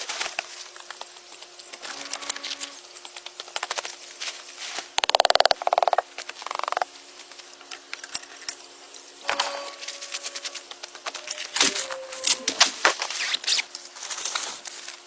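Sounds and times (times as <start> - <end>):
steady high-pitched whine: 0.0 - 15.0
frogs croaking: 5.0 - 7.0.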